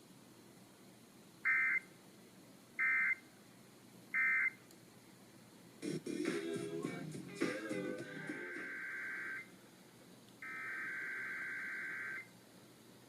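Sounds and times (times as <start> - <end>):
two-tone data bursts: 8.4 - 9.5, 10.4 - 12.3.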